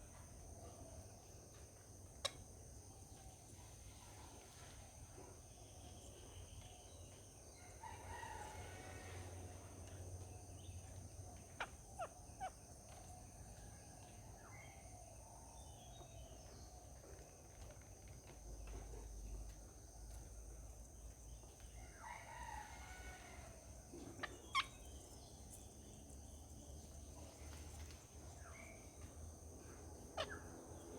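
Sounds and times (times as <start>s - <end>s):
faint rooster crowing: 6.9s - 10.4s, 20.9s - 25.3s.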